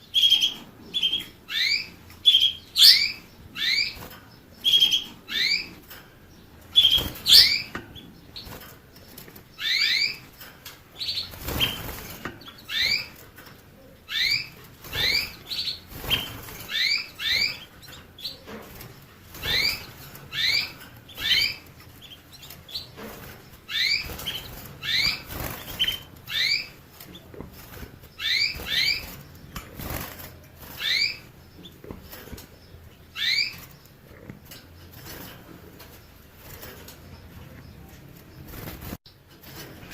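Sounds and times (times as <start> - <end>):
canary chirping: 0.0 - 39.9.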